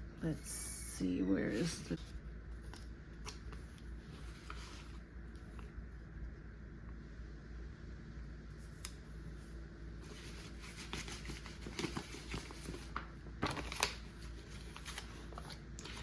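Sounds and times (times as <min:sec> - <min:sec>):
low steady hum: 0:00.0 - 0:16.0
paper rustling: 0:01.5 - 0:05.5, 0:08.7 - 0:16.0.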